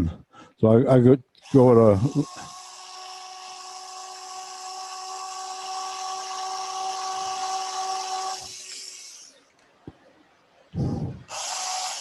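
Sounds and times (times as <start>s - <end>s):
electric drill whining: 1.4s - 9.5s, 10.8s - 12.0s.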